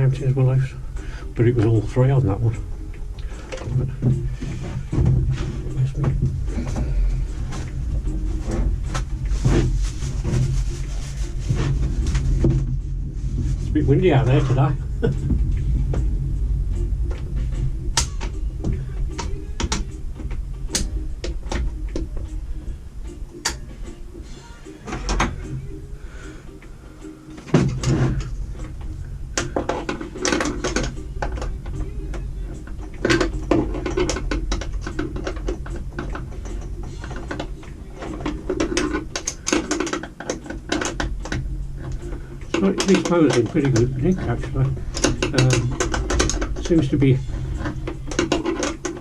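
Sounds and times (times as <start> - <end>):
steady low hum: 0.0 - 49.0
wind rumbling on microphone: 3.6 - 23.0
metal clicks and knocks: 27.4 - 49.0.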